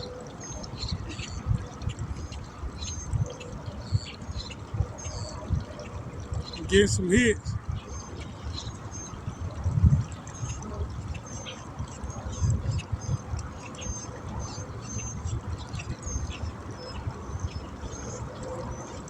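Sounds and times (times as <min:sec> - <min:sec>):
small birds chirping: 0:00.0 - 0:19.0
water lapping: 0:00.0 - 0:19.0.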